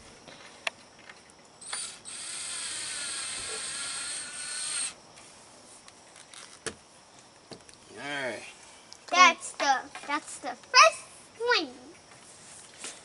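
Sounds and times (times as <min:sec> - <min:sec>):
cordless drill driving screw: 0:01.6 - 0:05.0.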